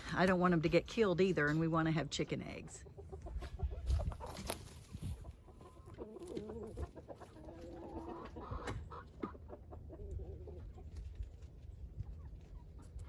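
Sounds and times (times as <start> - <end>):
hens clucking and calling: 2.6 - 13.0.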